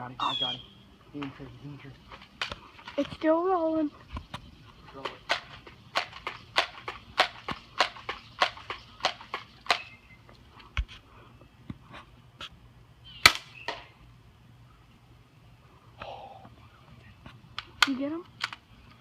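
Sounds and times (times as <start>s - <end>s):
rustles and clicks: 1.1s - 11.1s
sharp crack: 5.0s - 9.9s, 13.2s - 14.0s.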